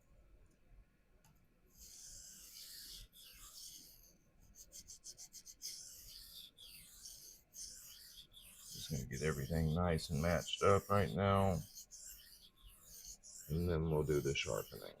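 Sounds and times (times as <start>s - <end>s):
blade scraping sharpening stone: 5.6s - 9.4s, 10.1s - 13.6s.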